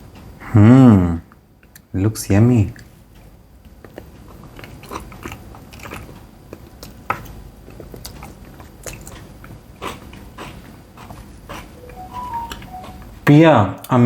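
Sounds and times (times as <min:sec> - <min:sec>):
person chewing toasted bread: 0:03.2 - 0:11.8.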